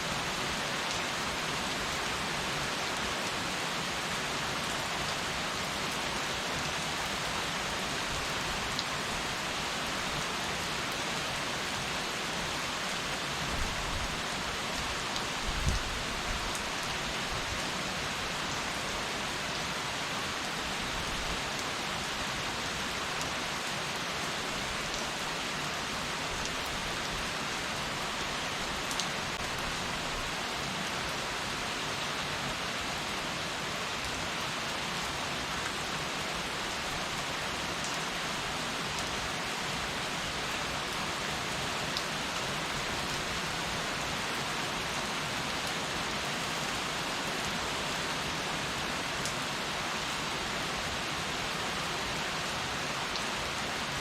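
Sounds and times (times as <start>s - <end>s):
heavy rain falling: 0.1s - 54.0s.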